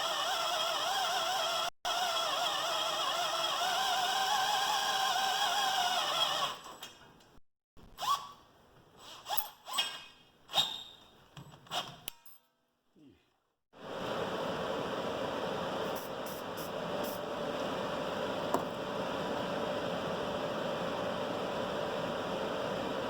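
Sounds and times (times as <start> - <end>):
machine humming: 13.8 - 23.0.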